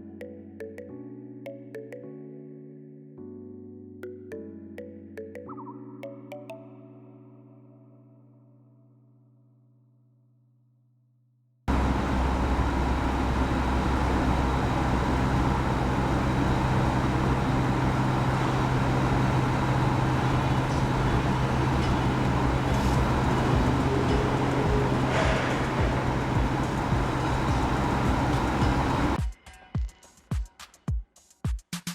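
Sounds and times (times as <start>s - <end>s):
oven mechanical hum: 11.7s - 29.2s.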